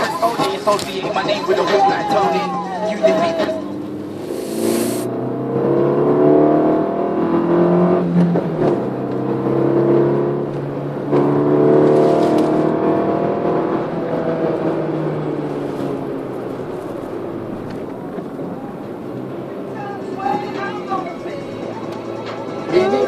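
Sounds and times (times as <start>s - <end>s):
car engine accelerating: 2.4s - 22.6s
short hiss: 4.1s - 5.1s.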